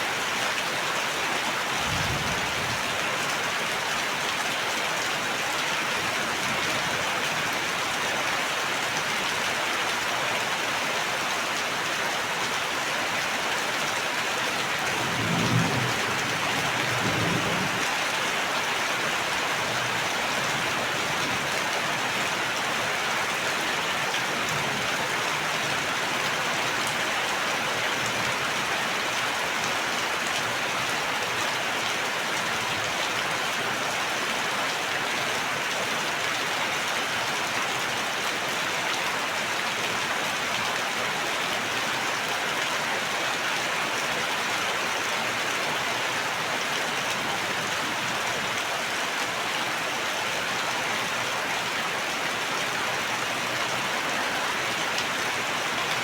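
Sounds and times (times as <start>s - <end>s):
steady rain hissing: 0.2s - 9.2s, 9.8s - 42.6s
low rumble of thunder: 1.8s - 3.0s, 14.9s - 17.9s.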